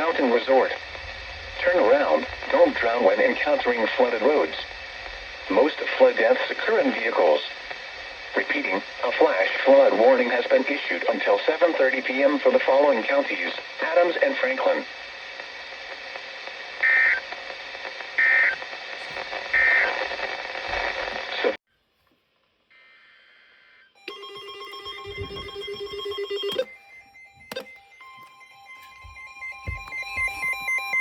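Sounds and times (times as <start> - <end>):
radio broadcast hiss: 0.0 - 21.6
ringing electronic alert tone: 24.0 - 31.0.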